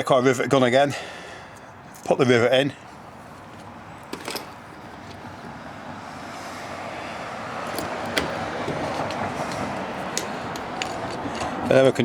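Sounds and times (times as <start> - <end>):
passing traffic rushing: 2.6 - 12.0.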